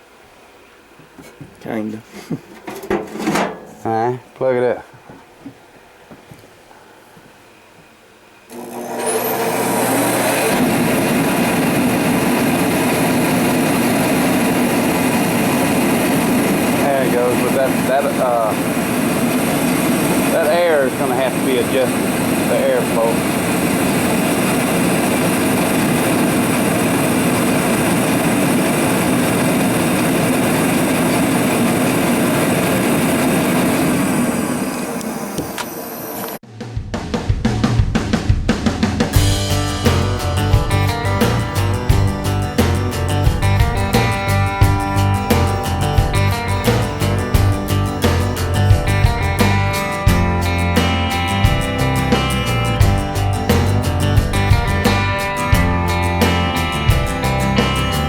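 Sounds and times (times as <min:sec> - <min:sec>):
blower motor whine: 0:08.5 - 0:36.4, 0:39.1 - 0:58.0
burner roaring: 0:09.4 - 0:35.5.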